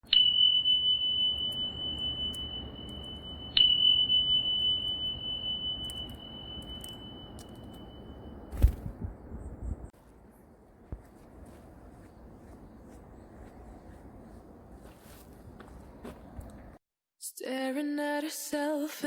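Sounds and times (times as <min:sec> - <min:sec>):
high pure ringing tone: 0:00.0 - 0:08.9.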